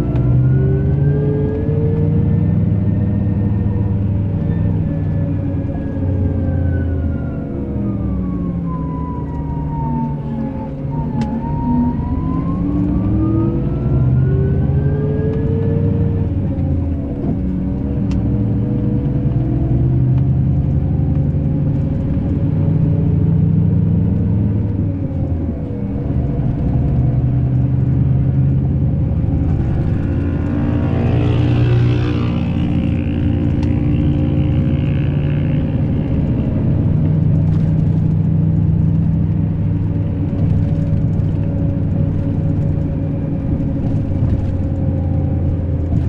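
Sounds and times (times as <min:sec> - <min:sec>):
bus diesel engine running: 0:00.0 - 0:46.0.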